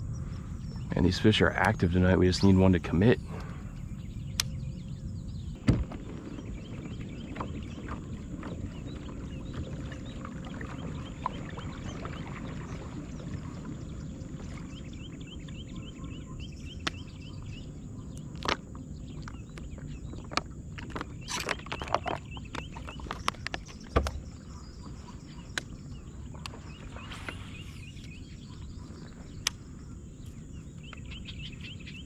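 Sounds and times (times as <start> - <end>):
steady low noise: 0.0 - 12.2.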